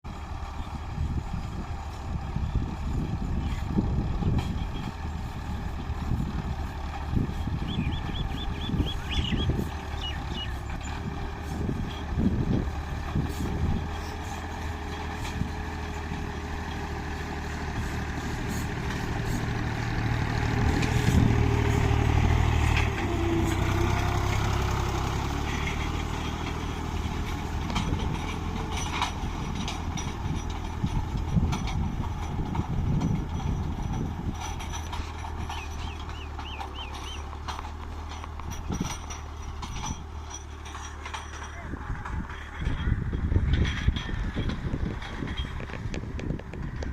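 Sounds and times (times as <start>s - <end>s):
tractor engine running: 0.0s - 46.9s
light knocks and rattles: 9.8s - 46.9s.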